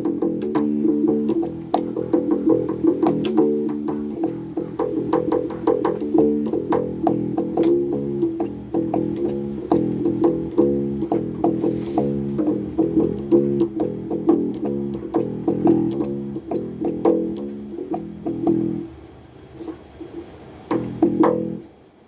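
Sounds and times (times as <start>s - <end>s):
bass guitar plucked notes: 0.0s - 18.9s, 20.7s - 21.6s.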